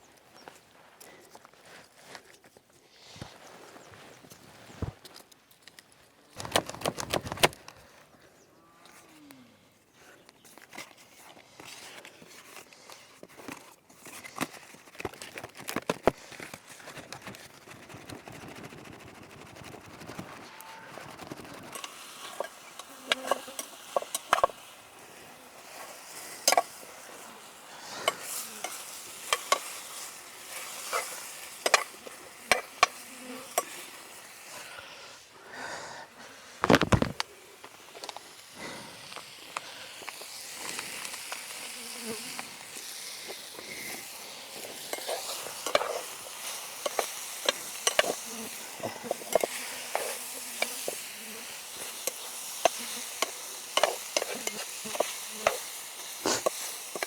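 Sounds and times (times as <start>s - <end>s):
food sizzling over campfire: 10.6s - 57.0s.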